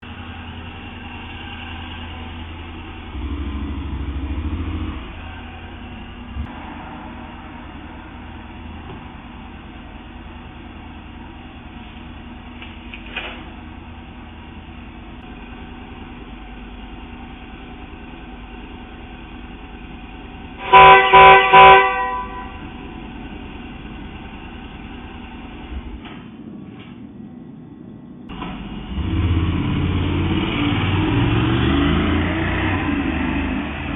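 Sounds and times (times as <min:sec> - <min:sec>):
car horn blasts: 0:20.6 - 0:22.7.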